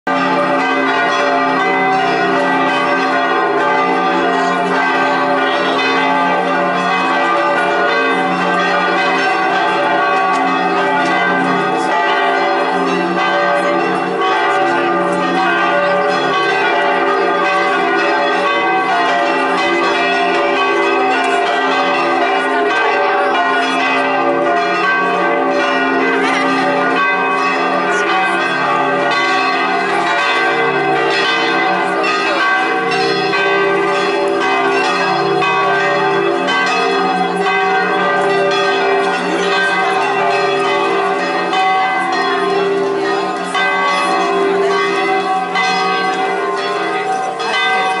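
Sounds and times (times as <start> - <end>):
church bells ringing: 0.1 - 48.0.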